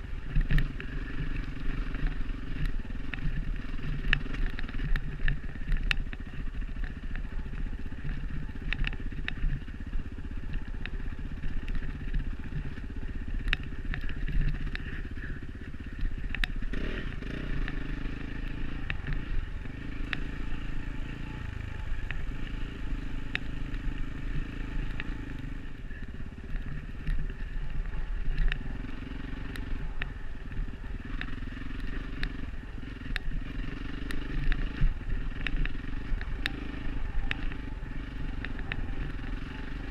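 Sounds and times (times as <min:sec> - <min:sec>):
dirt bike engine revving: 0:16.6 - 0:39.9.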